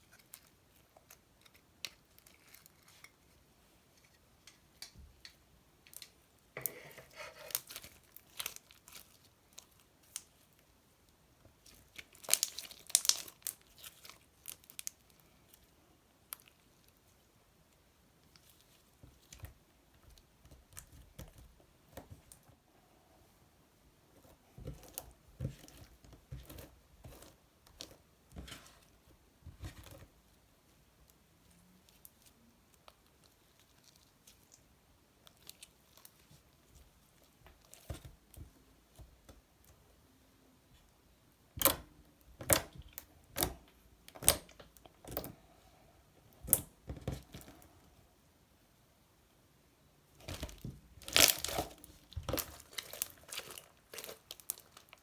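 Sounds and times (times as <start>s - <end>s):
slime squishing with sticky pops: 11.5s - 15.2s, 41.5s - 45.4s, 50.2s - 55.0s.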